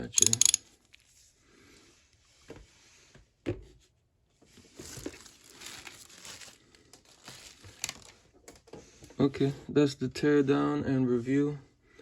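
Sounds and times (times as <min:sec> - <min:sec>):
rustling and crinkling: 0:04.4 - 0:08.8.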